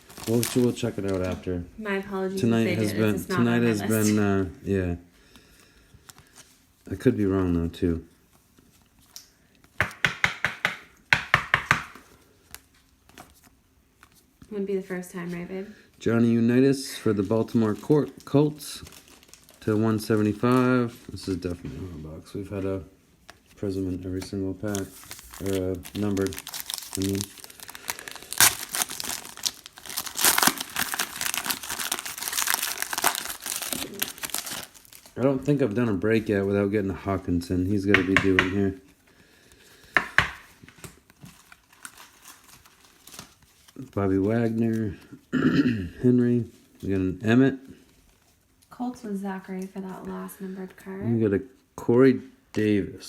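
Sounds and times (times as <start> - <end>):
foil wrapper crinkling and tearing: 0.0 - 1.4, 16.9 - 21.4, 24.6 - 35.6, 40.8 - 44.8
sharp knocks on hard surface: 9.8 - 12.0, 37.9 - 38.6, 40.0 - 40.5.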